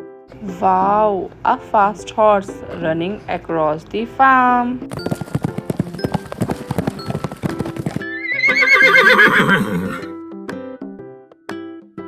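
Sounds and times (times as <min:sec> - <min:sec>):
horse hooves galloping: 0:04.8 - 0:10.1
horse whinnying: 0:07.2 - 0:10.2.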